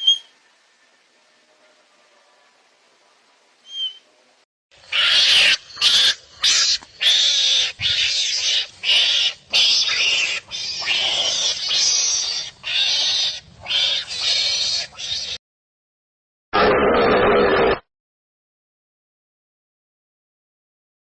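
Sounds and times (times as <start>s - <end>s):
harsh animal calls: 4.8s - 15.4s.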